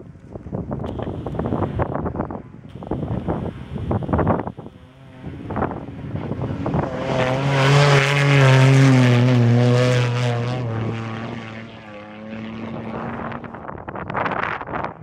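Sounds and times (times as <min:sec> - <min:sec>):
race vehicle engine passing by: 0:04.8 - 0:13.7.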